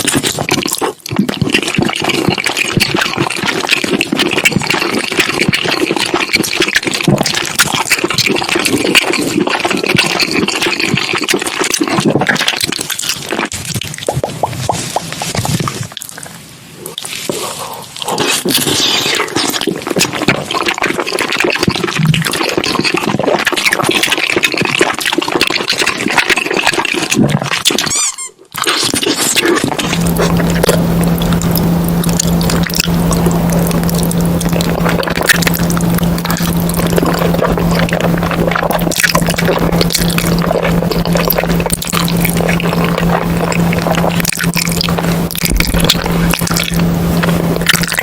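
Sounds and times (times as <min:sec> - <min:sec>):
wet chewing and smacking: 0:00.0 - 0:48.0
steady low hum: 0:29.6 - 0:48.0.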